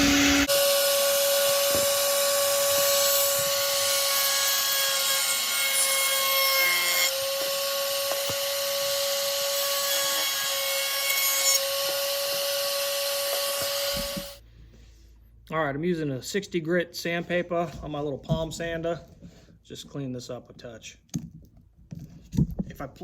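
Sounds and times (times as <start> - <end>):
power tool scraping wood: 0.0 - 14.4.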